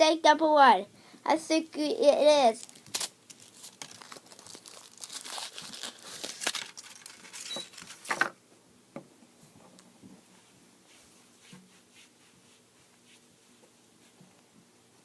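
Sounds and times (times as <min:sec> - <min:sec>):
wrapper crinkling and tearing: 0:02.6 - 0:08.2.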